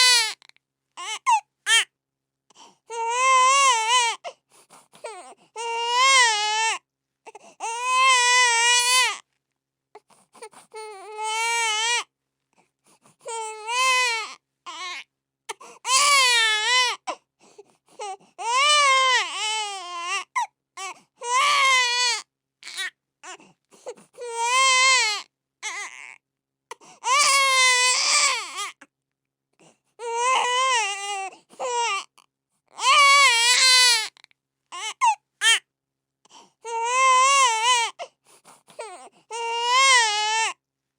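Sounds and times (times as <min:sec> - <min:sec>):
infant crying: 0:00.0 - 0:00.4, 0:01.0 - 0:01.9, 0:02.9 - 0:04.4, 0:05.0 - 0:09.2, 0:10.7 - 0:12.1, 0:13.2 - 0:17.2, 0:18.0 - 0:26.2, 0:27.0 - 0:28.8, 0:30.0 - 0:35.6, 0:36.6 - 0:38.1, 0:38.8 - 0:40.6.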